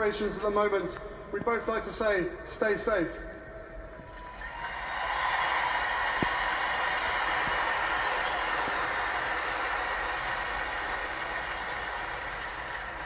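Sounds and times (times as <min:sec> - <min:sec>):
stadium crowd cheering and applauding: 0:04.0 - 0:13.0.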